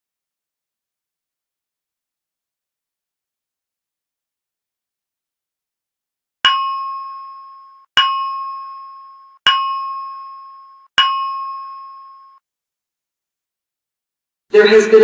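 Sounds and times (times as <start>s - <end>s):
fire alarm chime: 6.5s - 12.4s.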